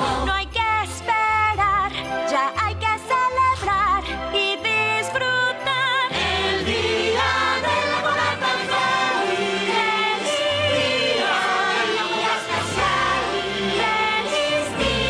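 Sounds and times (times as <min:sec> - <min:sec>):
choir singing: 0:00.0 - 0:00.3, 0:06.1 - 0:15.0
backing music: 0:00.0 - 0:15.0.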